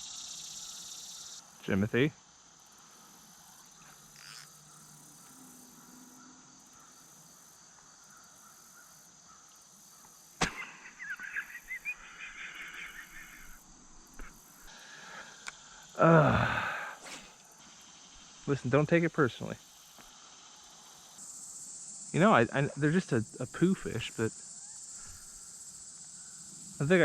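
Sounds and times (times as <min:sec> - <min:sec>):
insects chirring: 0:00.0 - 0:27.0
loud animal call: 0:10.4 - 0:13.6.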